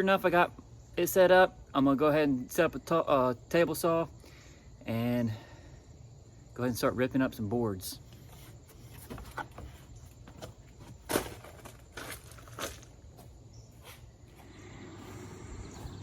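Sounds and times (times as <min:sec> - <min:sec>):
footsteps: 0:08.1 - 0:16.0.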